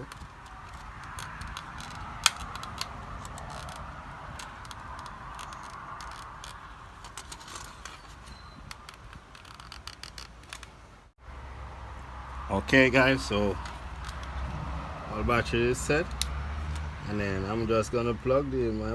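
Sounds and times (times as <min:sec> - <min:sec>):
hands handling small parts: 0:00.0 - 0:10.8, 0:13.5 - 0:14.5.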